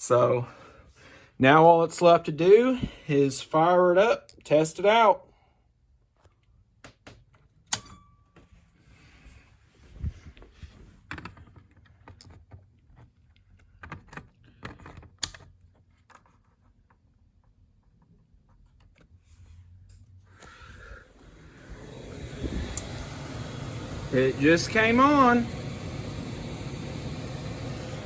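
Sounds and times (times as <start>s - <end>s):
air handler blower rushing: 20.4s - 28.0s.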